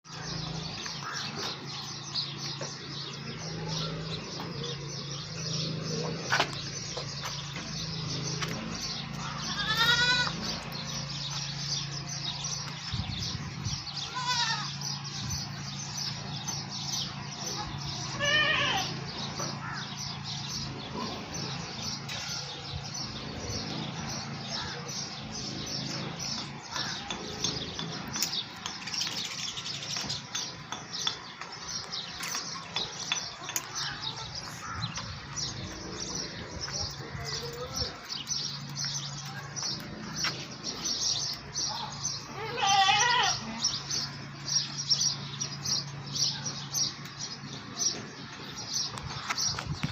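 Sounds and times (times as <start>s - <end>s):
small birds chirping: 0.0s - 49.9s
goats bleating: 9.2s - 10.7s, 14.0s - 14.9s, 18.0s - 19.1s, 41.8s - 43.7s.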